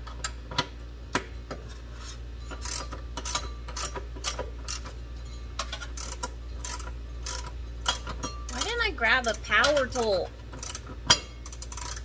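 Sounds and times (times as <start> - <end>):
socket ratchet clicking: 10.5 - 12.0.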